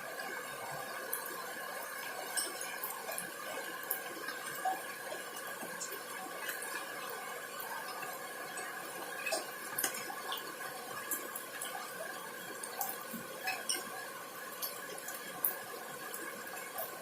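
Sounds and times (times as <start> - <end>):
raindrops ticking and splatting: 0.0 - 17.0.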